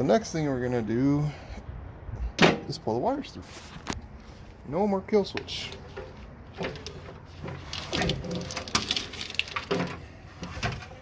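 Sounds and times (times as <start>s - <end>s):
wires rustling and scraping: 3.3s - 11.0s.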